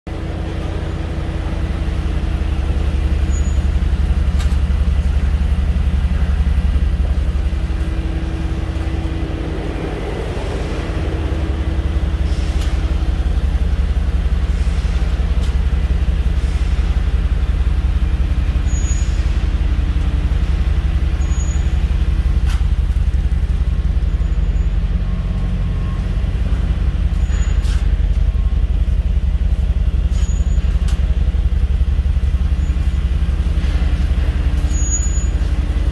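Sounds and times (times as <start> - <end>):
car engine running: 0.1 - 35.9
brake whistle: 3.1 - 4.5, 18.4 - 19.5, 21.1 - 21.9, 24.0 - 26.2, 27.1 - 27.9, 30.1 - 30.8, 34.6 - 35.6.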